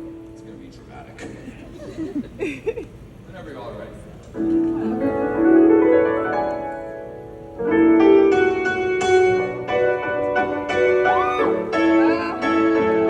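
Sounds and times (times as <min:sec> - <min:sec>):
piano playing slow chords: 0:00.0 - 0:00.9, 0:04.4 - 0:13.0.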